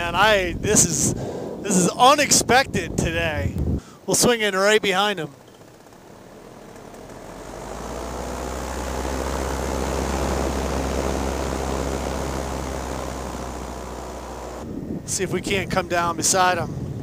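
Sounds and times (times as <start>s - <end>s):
paramotor engine droning: 5.3s - 15.7s.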